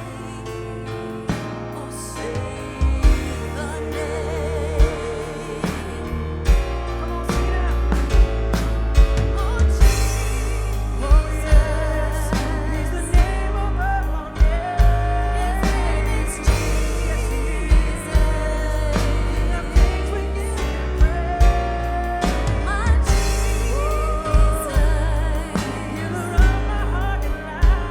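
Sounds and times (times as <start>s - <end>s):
person singing with vibrato: 0.0s - 27.9s
worship band playing: 0.0s - 27.9s
kick drum beats: 21.0s - 21.8s.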